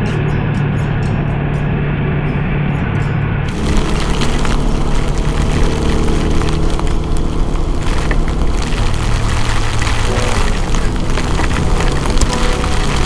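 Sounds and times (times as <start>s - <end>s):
wind noise on microphone: 3.5s - 13.0s.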